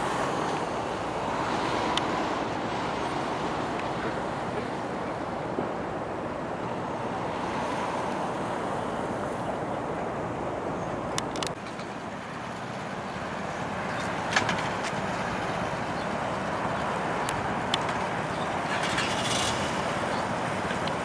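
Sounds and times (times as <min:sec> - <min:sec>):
outdoor rumble and hiss: 0:00.0 - 0:21.0.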